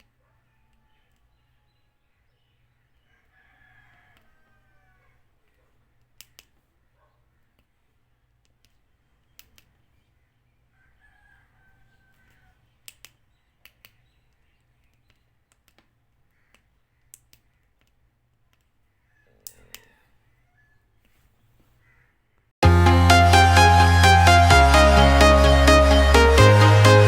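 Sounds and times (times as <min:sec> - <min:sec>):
rooster crowing: 0:00.2 - 0:01.9, 0:03.0 - 0:05.3, 0:10.7 - 0:12.7, 0:19.1 - 0:20.9
faint sharp clicks: 0:05.5 - 0:06.6, 0:08.4 - 0:09.8, 0:12.2 - 0:18.7.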